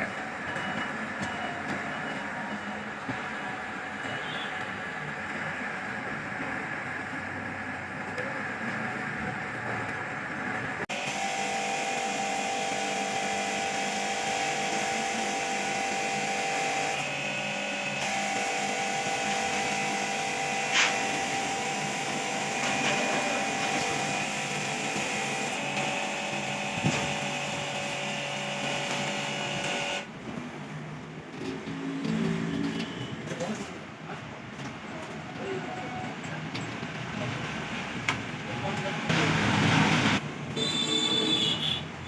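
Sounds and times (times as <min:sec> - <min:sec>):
machine whining: 0:10.9 - 0:30.1.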